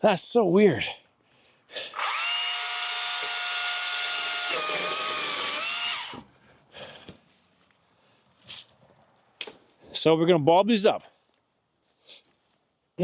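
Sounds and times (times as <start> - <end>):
power tool motor whining: 2.0 - 6.3.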